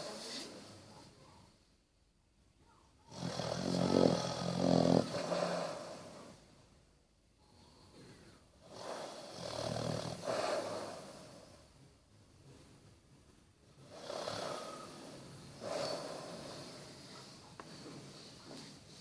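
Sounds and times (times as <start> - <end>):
dog snoring: 3.1 - 6.5, 7.6 - 11.7, 13.8 - 18.7.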